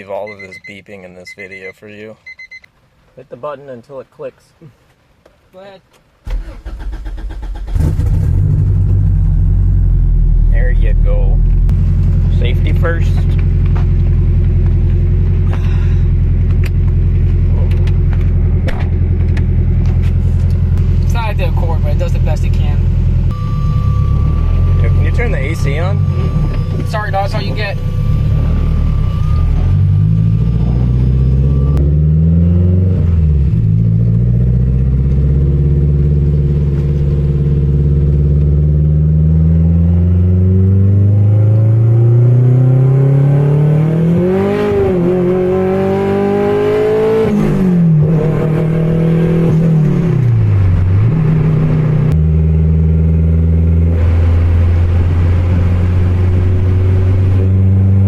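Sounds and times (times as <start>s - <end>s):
car engine accelerating through gears: 6.3s - 10.6s, 22.8s - 58.0s.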